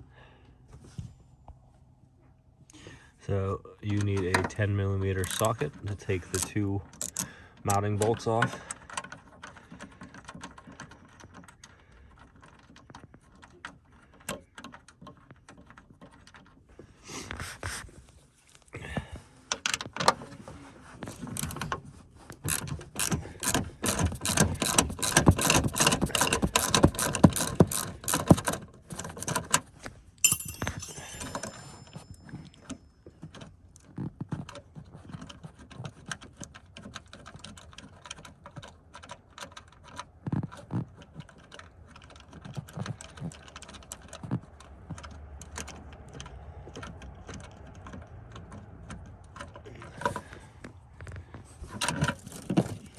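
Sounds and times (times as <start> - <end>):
ratchet wrench clicking: 5.2 - 5.6, 6.3 - 7.3, 22.5 - 29.4
metallic jingle: 30.2 - 33.0.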